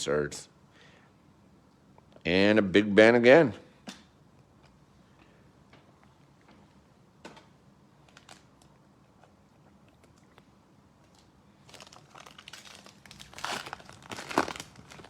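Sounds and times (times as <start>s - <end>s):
plastic wrapper crinkling: 8.0s - 8.7s, 11.0s - 15.0s.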